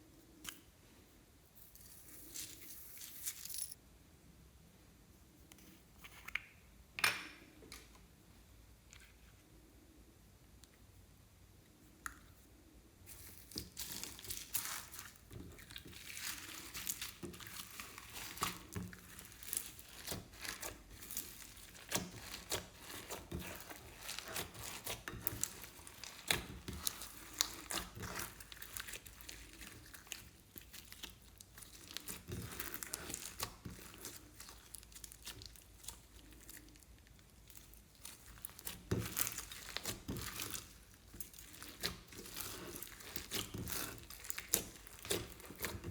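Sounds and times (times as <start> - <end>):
slime crackling and popping: 13.3 - 45.9.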